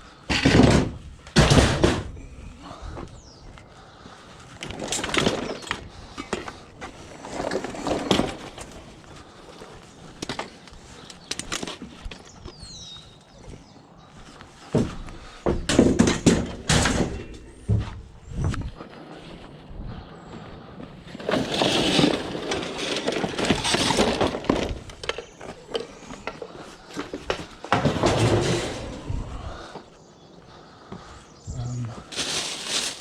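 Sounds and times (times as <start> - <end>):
scrap metal clanking: 21.2 - 26.4, 27.0 - 29.2.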